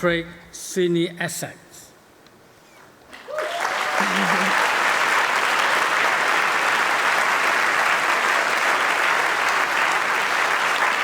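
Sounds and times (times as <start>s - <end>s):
congregation applauding: 3.1s - 11.0s.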